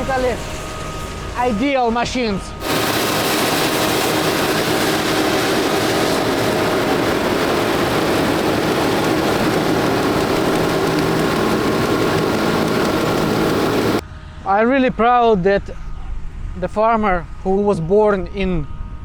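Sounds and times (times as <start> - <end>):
combine harvester drone: 0.0 - 14.5.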